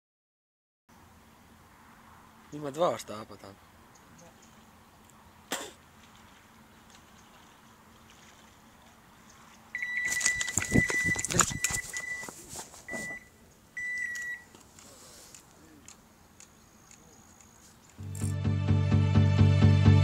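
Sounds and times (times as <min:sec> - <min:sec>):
bite alarm high beep: 0:09.8 - 0:12.3, 0:12.9 - 0:14.5.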